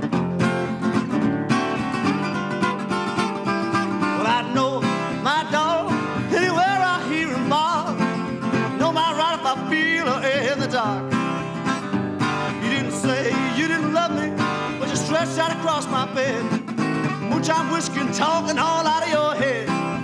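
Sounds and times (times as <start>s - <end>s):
acoustic blues guitar: 0.0s - 20.0s.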